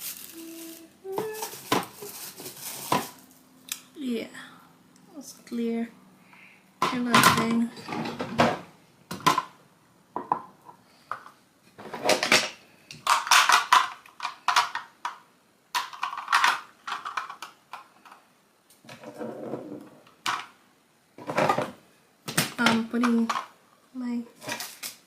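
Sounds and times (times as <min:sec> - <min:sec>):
household items clattering: 0:00.0 - 0:03.3, 0:21.2 - 0:21.8.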